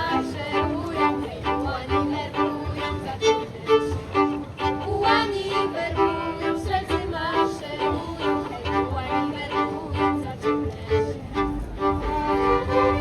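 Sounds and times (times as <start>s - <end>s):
steady low beat: 9.9s - 13.0s.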